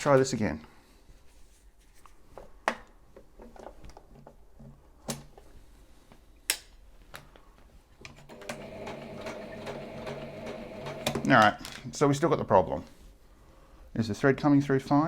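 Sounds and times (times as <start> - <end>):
sewing machine clicks and knocks: 8.1 - 11.3.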